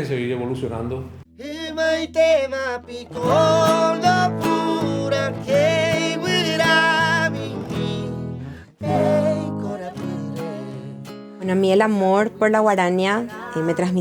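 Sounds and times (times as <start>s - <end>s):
acoustic guitar: 1.2s - 14.0s
person singing with vibrato: 1.4s - 11.6s, 13.1s - 14.0s.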